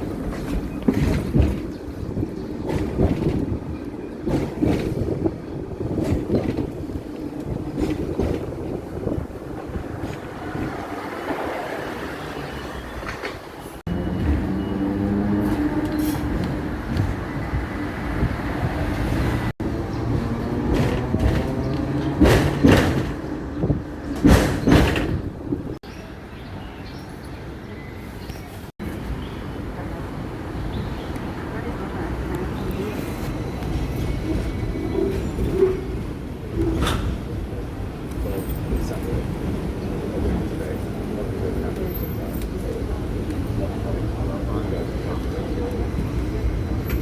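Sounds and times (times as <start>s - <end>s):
tram rumbling on tracks: 0.0s - 47.0s
rattles and clanks: 0.2s - 9.4s, 20.2s - 25.8s.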